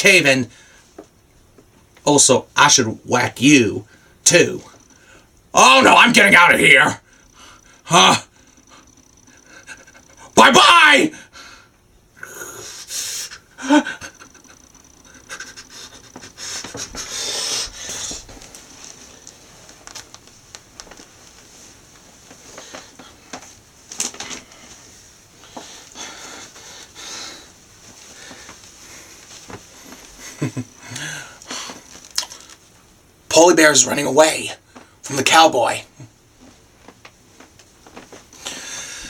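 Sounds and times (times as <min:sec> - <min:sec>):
person breathing hard: 0:15.6 - 0:18.3, 0:25.4 - 0:29.2, 0:30.8 - 0:31.9, 0:38.4 - 0:39.0.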